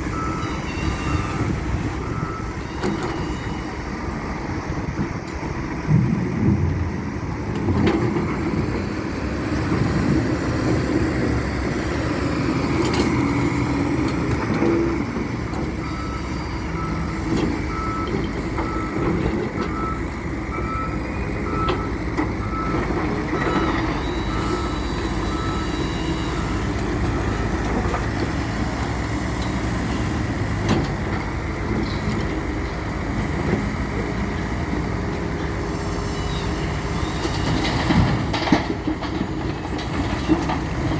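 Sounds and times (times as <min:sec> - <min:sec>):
backup alarm beeping: 0:00.0 - 0:03.9, 0:15.8 - 0:27.6
heavy diesel engine running: 0:00.0 - 0:40.9.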